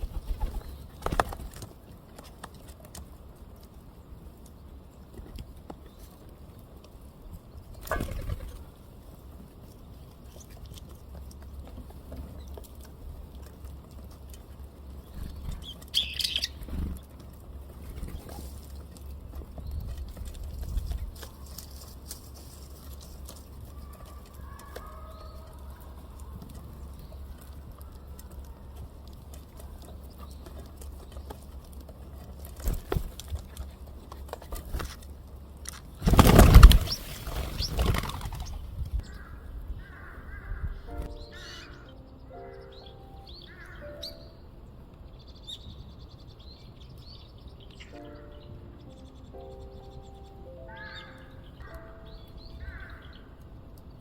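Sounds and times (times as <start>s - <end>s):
bird wing flaps and rustles: 0.0s - 3.1s, 7.7s - 8.8s, 16.6s - 24.9s, 30.3s - 39.0s.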